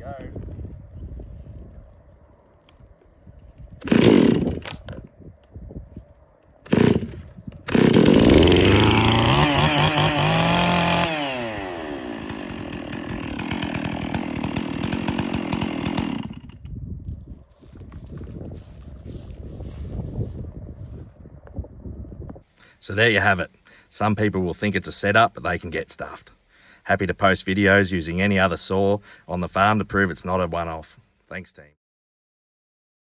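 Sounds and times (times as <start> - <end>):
chainsaw starting and revving: 3.8 - 4.8, 6.6 - 16.6.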